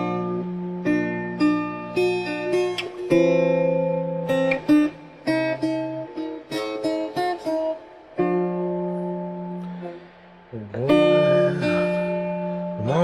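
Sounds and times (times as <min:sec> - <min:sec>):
acoustic guitar playing: 0:00.0 - 0:13.0.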